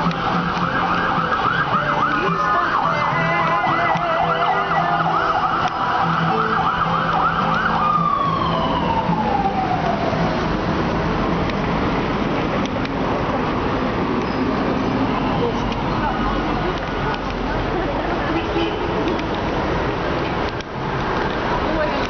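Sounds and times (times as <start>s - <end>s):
emergency vehicle siren: 0.0s - 11.2s
street traffic hum: 0.0s - 22.0s
higher siren tone: 0.3s - 10.3s.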